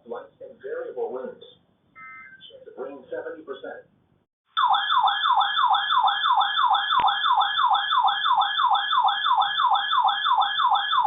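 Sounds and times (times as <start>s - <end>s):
warbling weather radio alarm: 4.6s - 11.0s.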